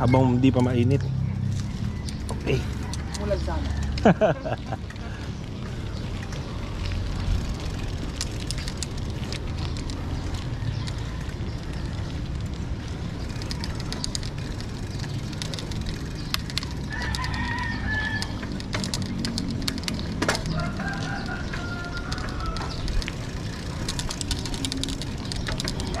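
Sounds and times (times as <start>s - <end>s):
scattered clicks: 5.8s - 26.0s
rooster crowing: 16.8s - 18.6s, 20.5s - 23.0s.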